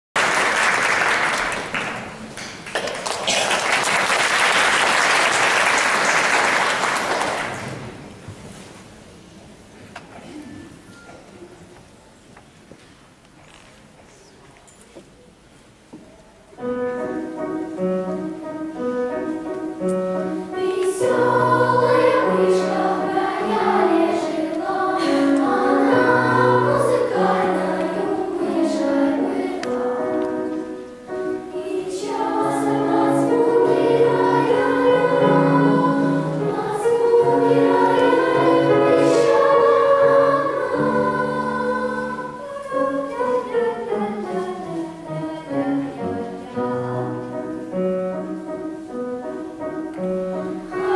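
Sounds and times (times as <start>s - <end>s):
low piano accompaniment: 14.3s - 50.9s
children's choir singing: 16.6s - 50.9s.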